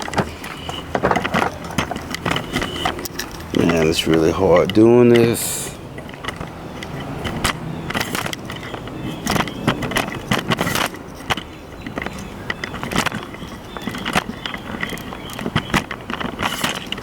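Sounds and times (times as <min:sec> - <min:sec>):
objects rattling inside a car: 0:00.0 - 0:17.0.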